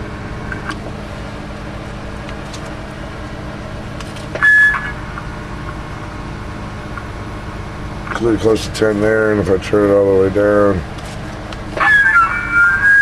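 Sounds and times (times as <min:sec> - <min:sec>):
electrical hum: 0:00.0 - 0:13.0
radio static burst with beep tone: 0:04.4 - 0:05.0, 0:11.8 - 0:13.0.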